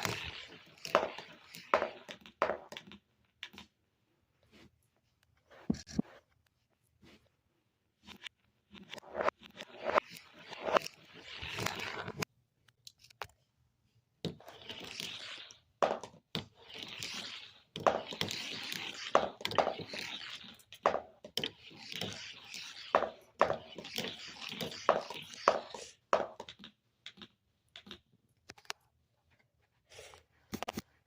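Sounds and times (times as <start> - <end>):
marble rolling and rattling: 0.0 - 3.7, 8.1 - 12.2, 14.4 - 28.0.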